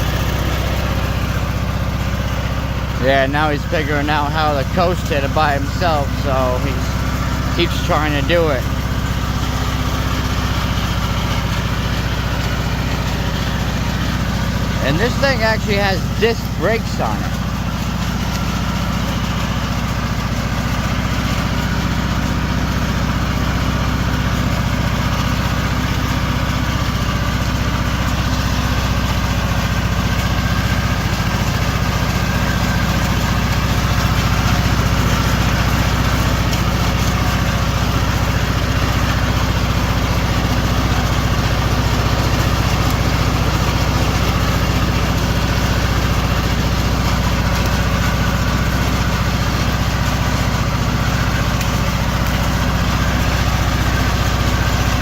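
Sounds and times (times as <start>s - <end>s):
lawn mower engine running: 0.0s - 55.0s.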